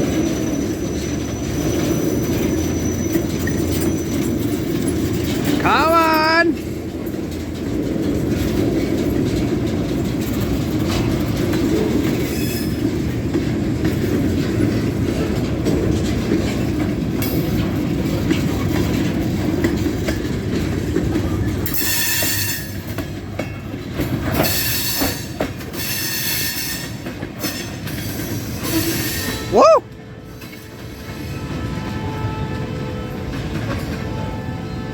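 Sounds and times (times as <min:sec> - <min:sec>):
high-pitched wheel squeal: 0:00.0 - 0:04.4
train wheels rumbling on rail: 0:00.0 - 0:34.9.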